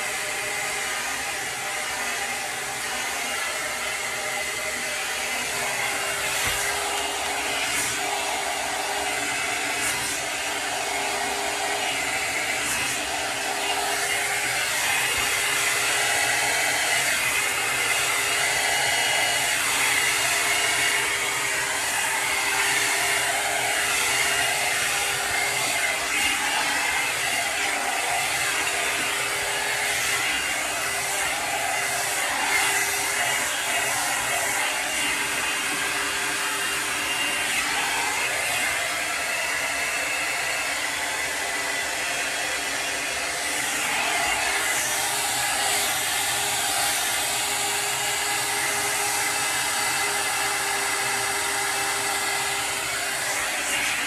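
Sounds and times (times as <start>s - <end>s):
rushing airflow: 18.6s - 41.1s.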